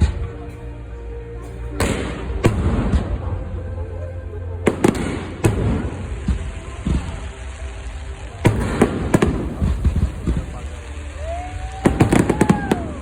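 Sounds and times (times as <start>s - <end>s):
firework bangs: 1.8s - 3.3s, 4.7s - 13.0s
firework crackling: 4.6s - 13.0s.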